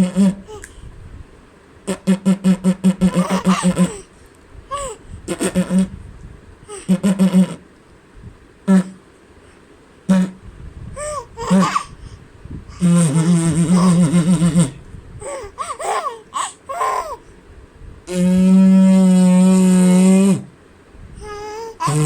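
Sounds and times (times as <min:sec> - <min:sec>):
baby squealing and laughing: 0:00.0 - 0:00.7, 0:03.0 - 0:04.1, 0:04.7 - 0:05.7, 0:11.0 - 0:12.0, 0:12.8 - 0:17.2, 0:21.2 - 0:22.0
low held voice: 0:01.9 - 0:06.0, 0:08.7 - 0:09.1, 0:10.1 - 0:17.2, 0:18.1 - 0:20.6, 0:21.2 - 0:22.0.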